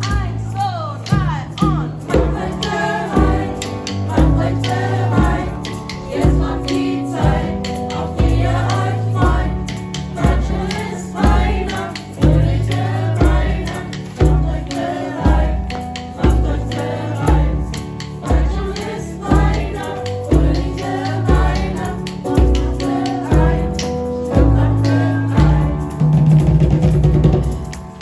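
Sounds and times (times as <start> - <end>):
group of voices singing: 0.0 - 26.4
steady low beat: 1.2 - 28.0.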